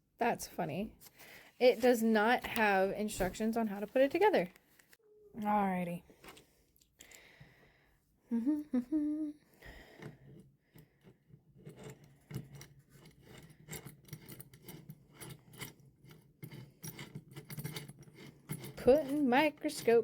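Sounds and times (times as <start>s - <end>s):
woman humming: 8.3s - 9.5s.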